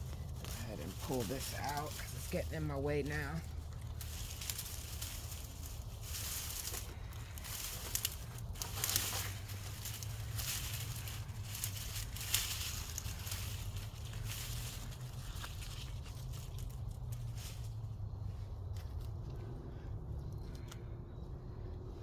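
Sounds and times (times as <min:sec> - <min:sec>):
hands digging in damp soil: 0:00.0 - 0:19.8.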